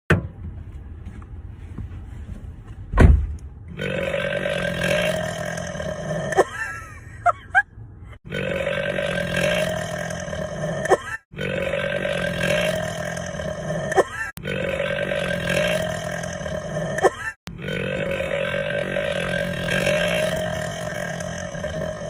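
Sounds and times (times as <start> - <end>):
sharp thump: 0.1 - 0.4, 2.9 - 3.4
girl burping: 4.7 - 6.8, 9.4 - 14.8, 16.8 - 17.4.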